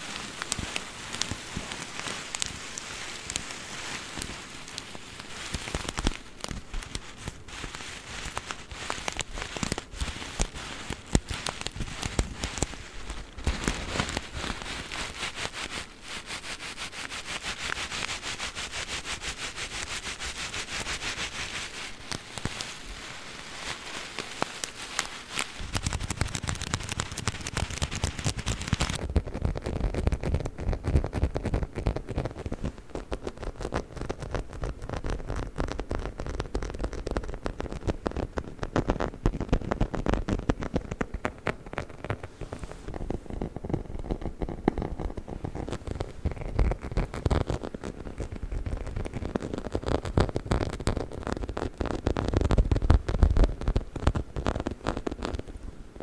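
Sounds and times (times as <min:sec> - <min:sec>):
plastic package crinkling: 0:00.0 - 0:30.1
dog toy tapping and rubbing: 0:24.9 - 0:55.5.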